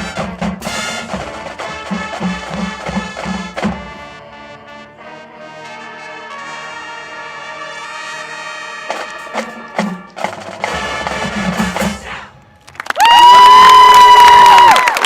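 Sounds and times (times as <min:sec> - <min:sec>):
sharp percussion hits: 0:00.0 - 0:03.9
marching band brass chord: 0:00.0 - 0:12.4.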